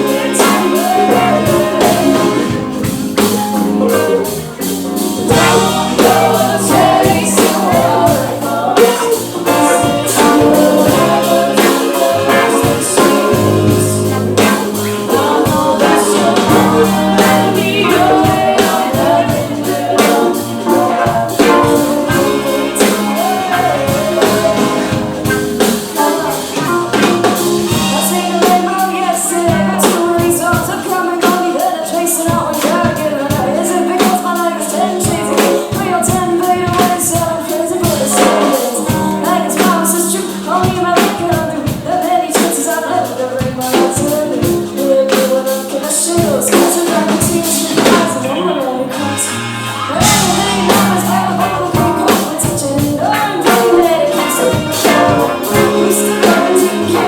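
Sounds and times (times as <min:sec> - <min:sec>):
live rock band playing: 0:00.0 - 0:57.0
person singing: 0:00.0 - 0:57.0.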